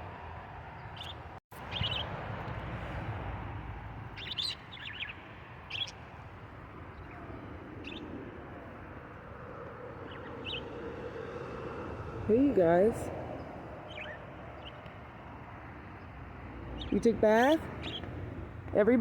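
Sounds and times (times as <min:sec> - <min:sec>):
budgerigars chirping: 0:01.0 - 0:02.1, 0:04.2 - 0:05.9, 0:13.9 - 0:14.8, 0:16.8 - 0:18.1.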